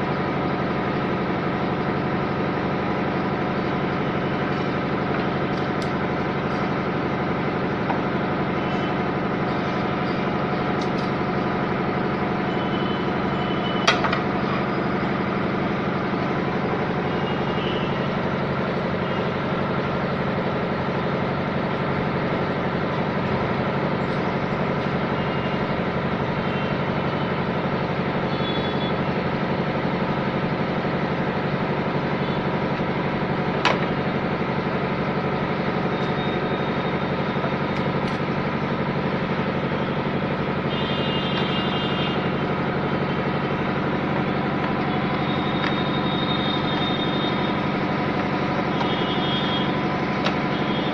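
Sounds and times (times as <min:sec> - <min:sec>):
motor humming: 0:28.3 - 0:50.9.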